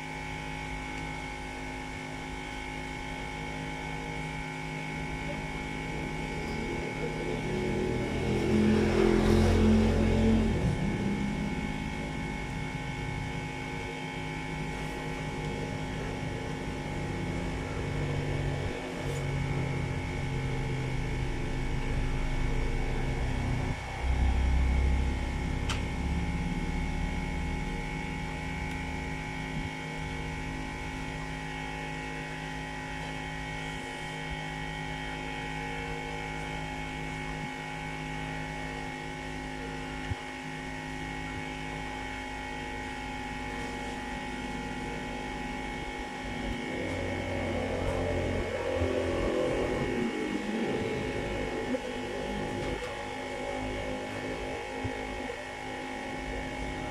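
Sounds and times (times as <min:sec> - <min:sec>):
electrical hum: 0:00.0 - 0:56.9
low rumbles: 0:05.6 - 0:29.7.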